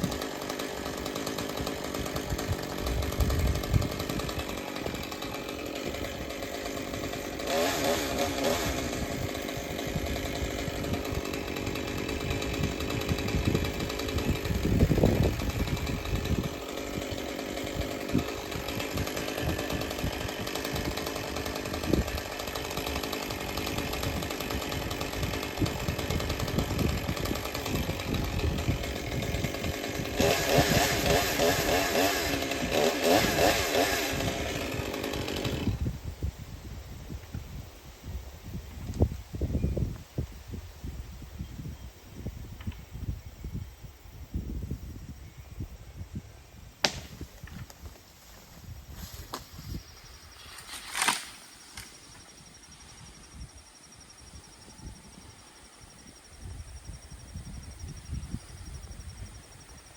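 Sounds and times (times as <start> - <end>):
chainsaw cutting branches: 0.0 - 36.0, 46.8 - 54.6.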